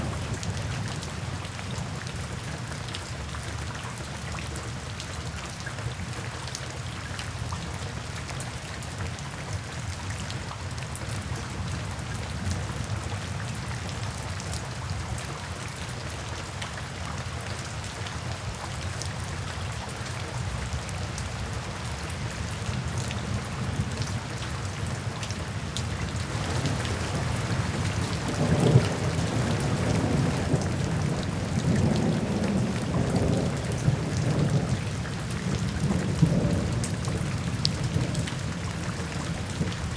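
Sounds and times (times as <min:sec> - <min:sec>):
steady rain falling: 0:00.0 - 0:39.9
low thunder rumble: 0:26.2 - 0:39.9.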